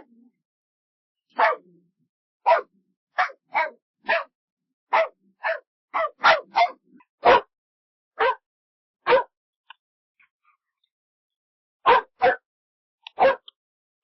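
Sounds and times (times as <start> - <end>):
dog barking: 1.3 - 1.8, 2.4 - 7.6, 8.2 - 9.4, 11.8 - 12.5, 13.1 - 13.6.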